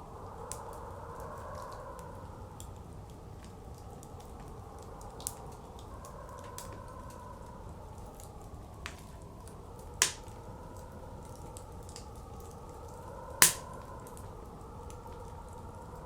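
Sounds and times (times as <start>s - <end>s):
wood fire crackling: 0.5s - 16.0s
fire popping loudly: 10.0s - 10.3s, 13.4s - 13.8s.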